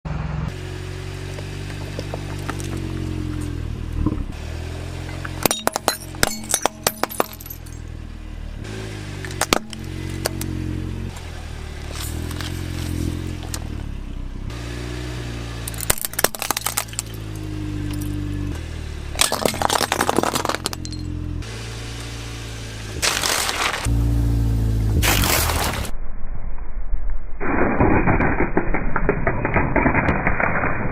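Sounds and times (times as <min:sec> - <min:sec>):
low droning: 0:00.1 - 0:30.9
toy cars clattering: 0:19.2 - 0:21.1.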